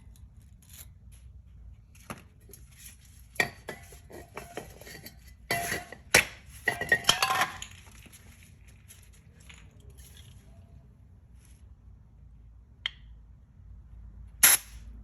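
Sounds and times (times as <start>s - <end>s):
metal tool scraping metal: 3.4s - 7.7s.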